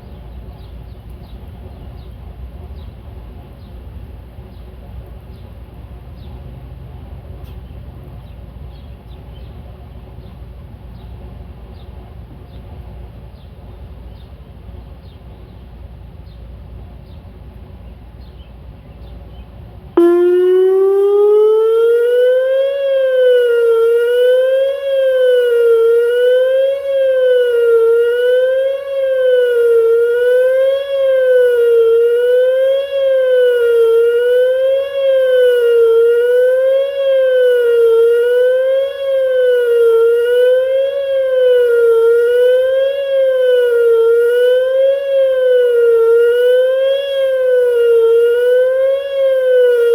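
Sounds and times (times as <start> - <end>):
outdoor warning siren wavering: 19.9 - 49.9.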